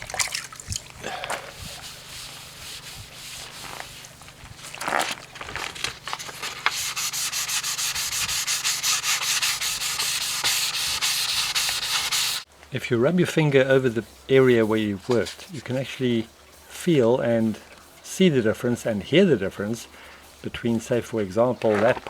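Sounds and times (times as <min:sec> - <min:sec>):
wet sanding strokes: 0:01.4 - 0:05.1, 0:05.7 - 0:12.5, 0:13.8 - 0:18.7.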